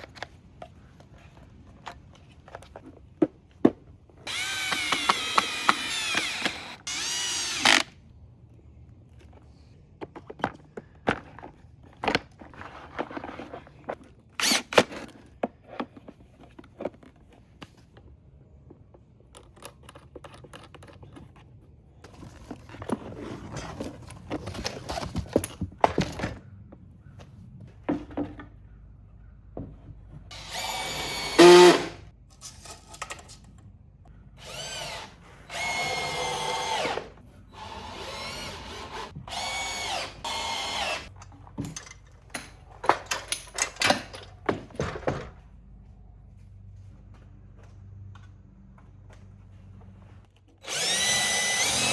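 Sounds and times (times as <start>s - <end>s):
power drill running: 4.3s - 7.9s, 30.3s - 32.0s, 34.4s - 41.1s, 50.6s - 51.9s
clicks and knocks of parts handled: 8.8s - 28.6s, 32.2s - 34.2s, 41.0s - 45.4s.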